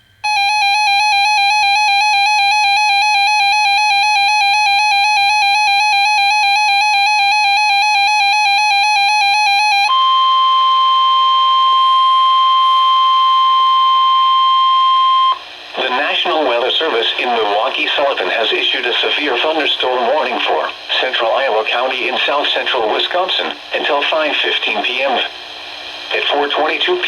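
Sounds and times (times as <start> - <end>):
steady warning alarm tone: 0.2 - 17.2
warbling electronic alarm tone: 0.3 - 15.4
broadcast hiss: 10.1 - 27.0.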